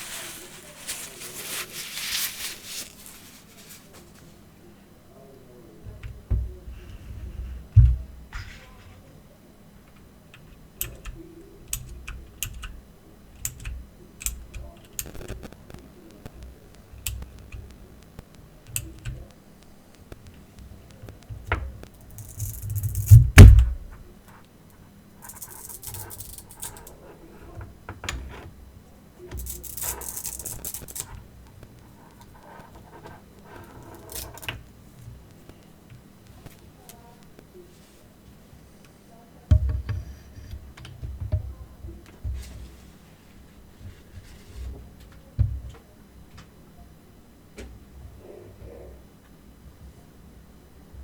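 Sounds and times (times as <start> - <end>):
packaging rustling: 0.0 - 4.3
heavy thump: 23.1 - 24.0.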